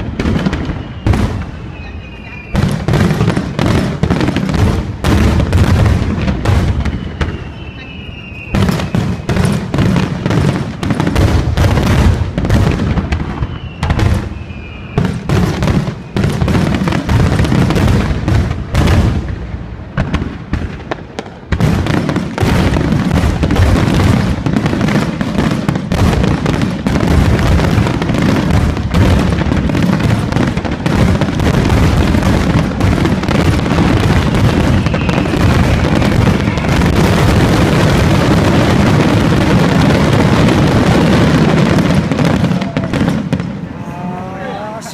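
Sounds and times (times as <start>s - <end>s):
fireworks bursting: 0.0s - 44.9s.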